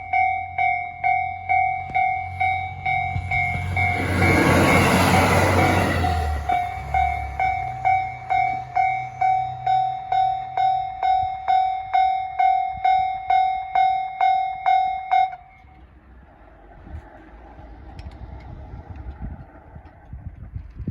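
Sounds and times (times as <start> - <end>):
level-crossing warning bell: 0.0 - 15.9.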